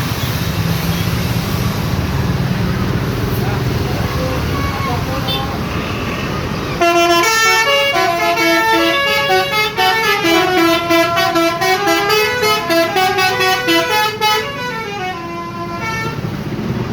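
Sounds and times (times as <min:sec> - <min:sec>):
bus horn playing fast melody: 0:04.5 - 0:16.3.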